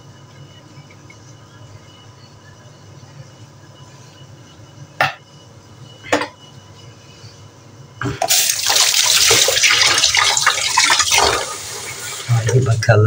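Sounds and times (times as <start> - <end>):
kitchen tap running water: 8.2 - 12.9.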